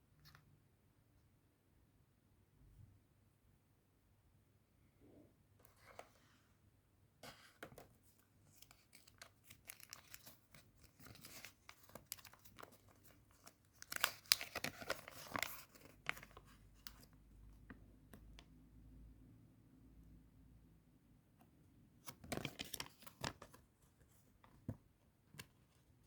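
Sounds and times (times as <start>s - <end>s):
wrapper tearing and crinkling: 13.8s - 16.2s.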